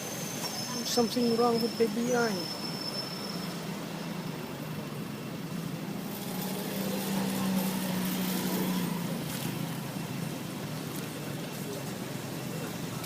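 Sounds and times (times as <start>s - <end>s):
vehicle engine passing: 3.2s - 13.0s.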